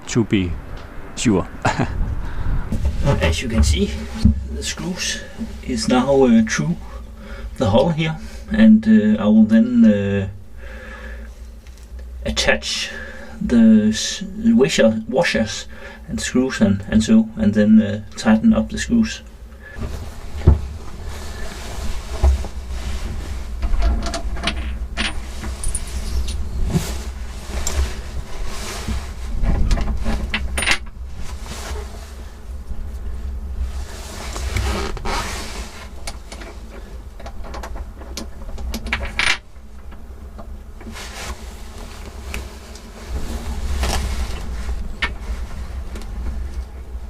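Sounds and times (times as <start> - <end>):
rustling handling noise: 19.8 - 47.0
metal washers and screws clinking: 25.0 - 26.5.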